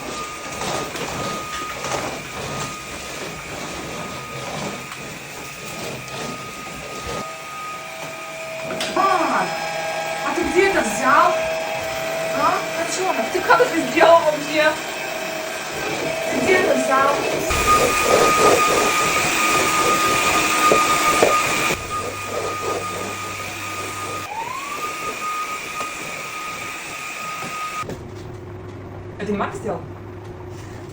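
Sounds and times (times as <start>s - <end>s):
robot vacuum cleaner running: 0.0s - 27.9s
rushing airflow: 14.8s - 27.4s.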